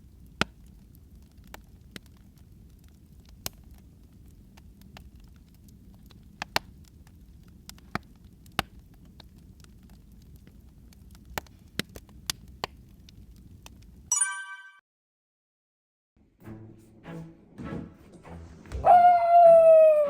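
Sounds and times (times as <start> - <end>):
wood fire crackling: 0.0 - 14.1.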